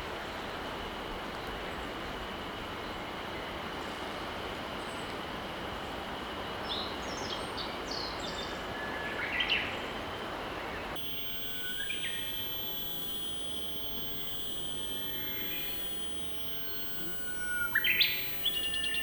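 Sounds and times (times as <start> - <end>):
small birds chirping: 10.6 - 19.0
steady high tone: 11.0 - 19.0.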